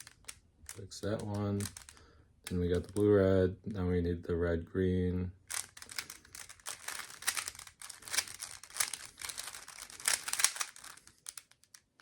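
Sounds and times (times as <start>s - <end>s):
puzzle cube clicking as turned: 0.0s - 3.0s, 5.5s - 12.0s.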